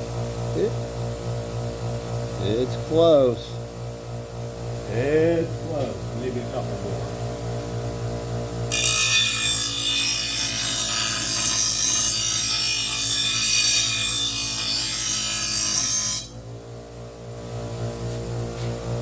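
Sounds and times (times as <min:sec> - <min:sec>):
blade grinding on sharpening stone: 0:08.7 - 0:16.4.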